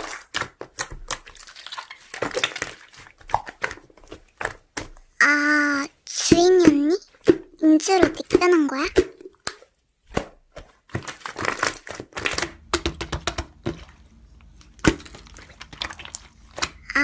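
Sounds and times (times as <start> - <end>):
slime squelching and clicking: 11.1 - 17.0.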